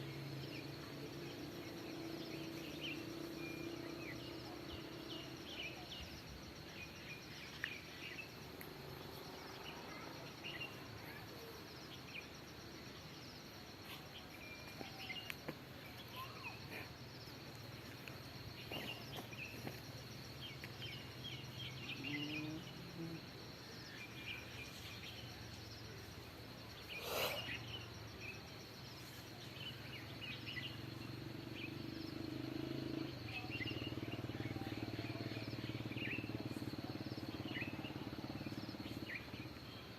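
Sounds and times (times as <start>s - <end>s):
birds chirping: 13.0s - 25.6s.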